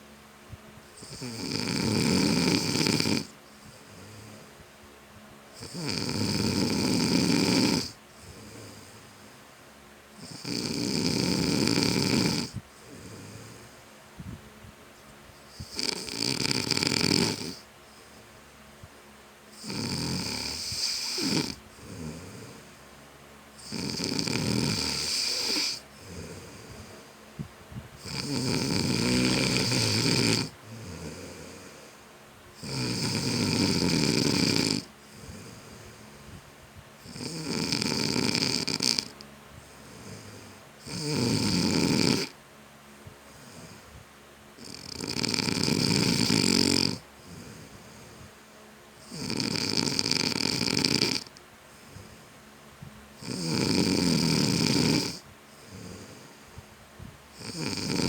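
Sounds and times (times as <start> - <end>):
man snoring heavily: 1.0 - 4.5, 5.6 - 9.2, 10.2 - 13.8, 15.5 - 17.6, 19.5 - 22.8, 23.6 - 27.2, 28.0 - 32.0, 32.6 - 36.2, 37.0 - 42.4, 43.3 - 43.9, 44.6 - 48.3, 49.0 - 52.3, 53.2 - 56.6, 57.3 - 58.0
soft breathing: 3.3 - 4.7, 8.0 - 9.6, 12.5 - 15.8, 17.6 - 19.1, 25.3 - 28.0, 29.0 - 32.2, 34.9 - 37.0, 39.2 - 40.8, 43.0 - 44.2, 47.0 - 48.7, 51.2 - 53.2, 55.2 - 57.4.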